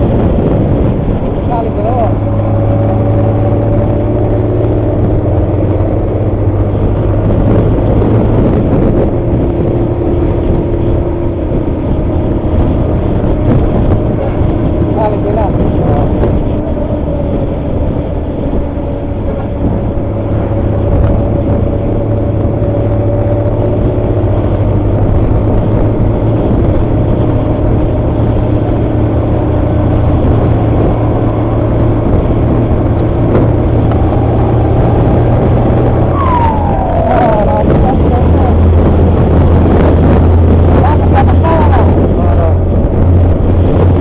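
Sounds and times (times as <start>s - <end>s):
diesel bus engine droning: 0.0s - 44.0s.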